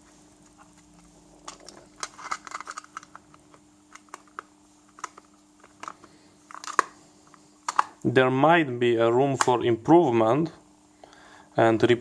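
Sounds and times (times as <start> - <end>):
plastic parts clicking and tapping: 1.4 - 8.0.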